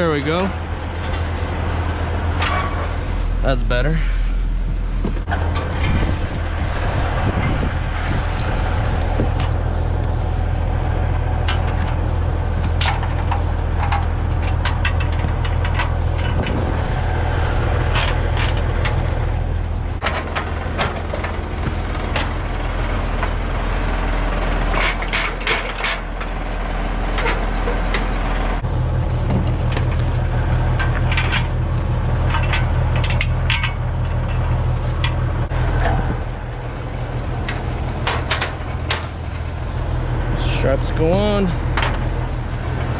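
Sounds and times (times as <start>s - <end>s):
truck engine idling: 0.0s - 42.9s
metallic clanks and clicks: 11.4s - 16.6s, 17.8s - 19.2s, 20.0s - 23.4s, 24.4s - 26.4s, 29.0s - 36.0s, 36.7s - 39.6s, 40.5s - 42.9s.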